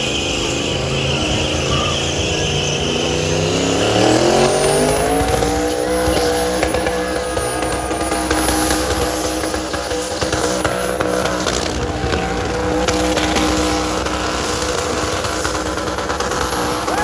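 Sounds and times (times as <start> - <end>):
engine revving high: 0.0 - 17.0
tire squeal: 0.0 - 17.0.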